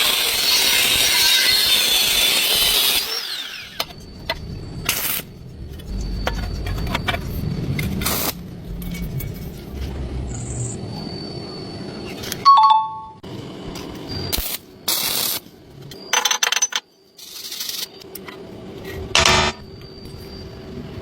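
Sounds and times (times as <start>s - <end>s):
power tool running and winding down: 0.0s - 4.0s.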